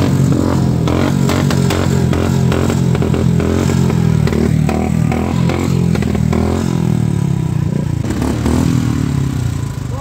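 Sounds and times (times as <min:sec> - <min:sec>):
motorcycle engine running: 0:00.0 - 0:10.0
exhaust pops and crackles: 0:00.7 - 0:05.1.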